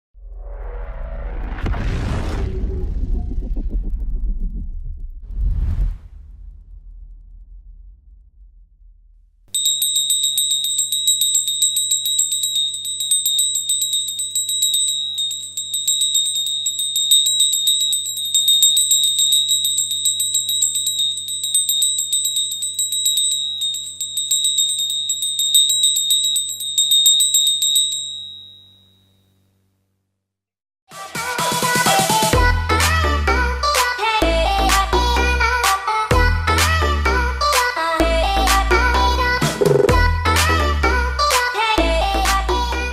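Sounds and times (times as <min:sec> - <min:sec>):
low hum: 0:00.2 - 0:18.5
hand bell ringing rapidly: 0:09.5 - 0:29.0.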